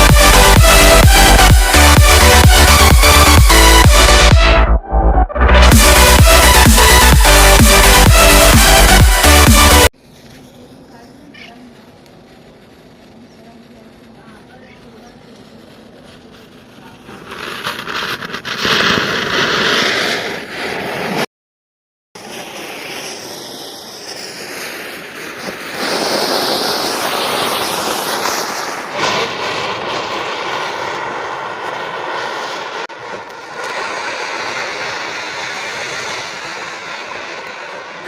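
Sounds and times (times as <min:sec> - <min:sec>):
fireworks hissing: 0:05.6 - 0:21.3, 0:22.2 - 0:38.0
faint crackle: 0:10.0 - 0:21.3, 0:22.2 - 0:38.0.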